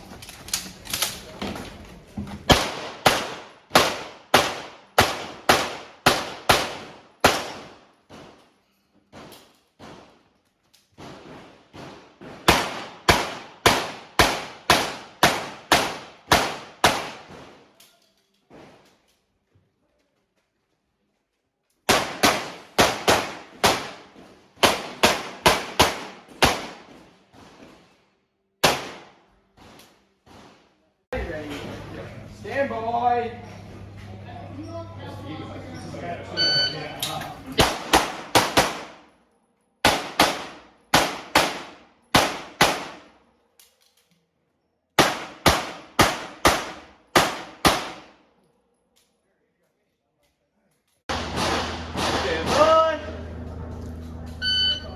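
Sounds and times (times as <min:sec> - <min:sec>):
pistol shots: 0:02.5 - 0:08.4, 0:11.0 - 0:17.6, 0:21.9 - 0:27.0, 0:28.6 - 0:30.6, 0:37.6 - 0:39.1, 0:39.8 - 0:43.1, 0:45.0 - 0:48.2, 0:51.1 - 0:52.8.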